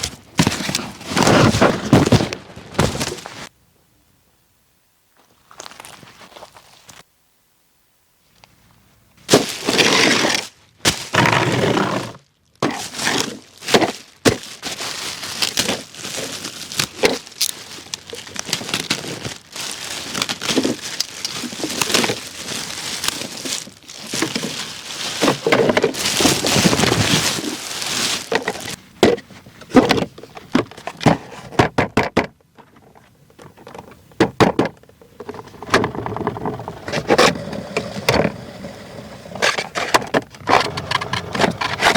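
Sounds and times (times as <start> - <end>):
plastic wrap and cardboard crinkling: 0.0 - 3.5, 9.2 - 28.8.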